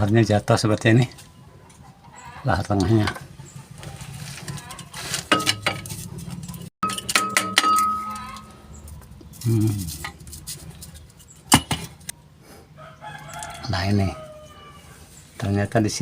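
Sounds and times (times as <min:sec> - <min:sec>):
sharp metallic knock: 0:06.8 - 0:08.2.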